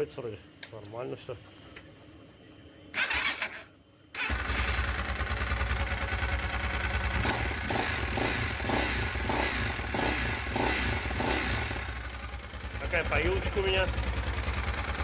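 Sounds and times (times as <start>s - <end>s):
motorcycle engine running: 4.2s - 15.0s.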